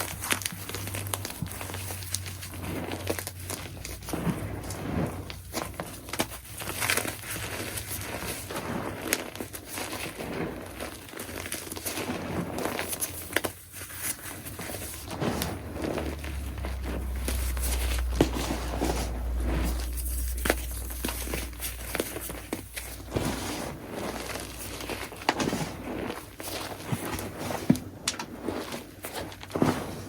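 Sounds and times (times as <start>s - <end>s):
chalk being crushed: 0.0s - 30.0s
low rumble: 14.7s - 26.4s.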